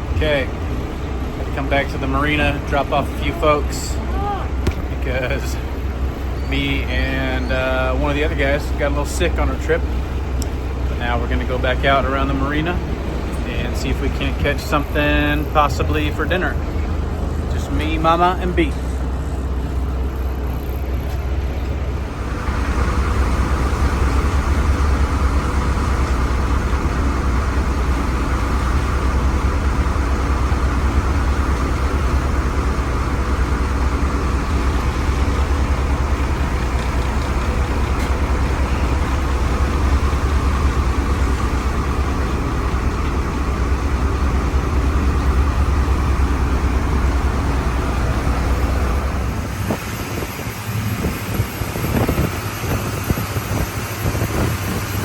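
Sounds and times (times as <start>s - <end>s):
motorboat engine running: 0.0s - 55.0s
rush of wind and water: 45.9s - 55.0s.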